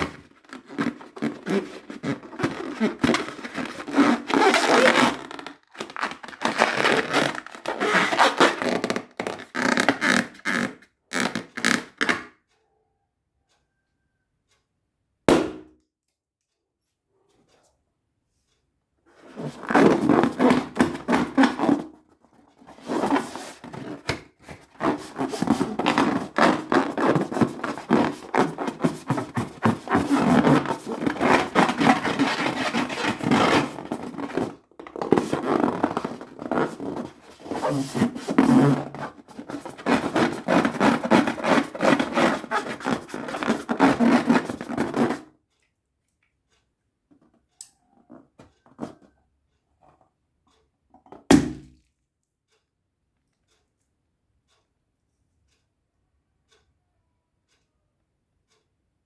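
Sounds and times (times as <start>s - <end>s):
rubber balloons crackling: 0.0s - 12.2s, 19.2s - 45.3s.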